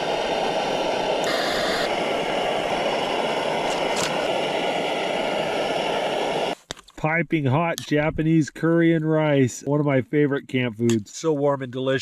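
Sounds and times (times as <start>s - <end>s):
camp stove burner hissing: 0.0s - 6.6s.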